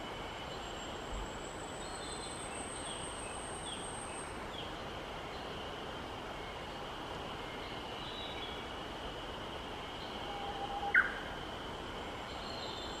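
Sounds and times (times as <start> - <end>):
bird song whistle: 10.3 - 11.3.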